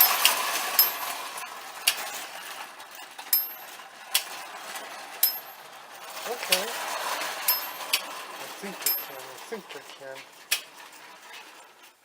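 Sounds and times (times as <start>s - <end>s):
small bell ringing: 0.0s - 1.4s, 3.3s - 3.8s, 5.2s - 5.7s, 7.4s - 8.1s, 8.8s - 9.5s.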